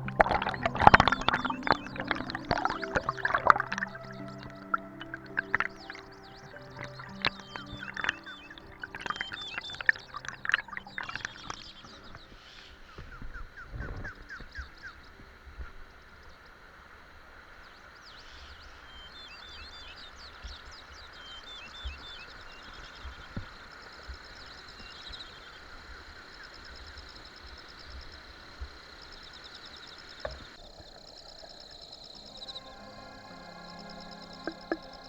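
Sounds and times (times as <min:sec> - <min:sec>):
birds chirping: 0:00.0 - 0:16.6, 0:29.0 - 0:35.0
stream water running: 0:00.0 - 0:35.0.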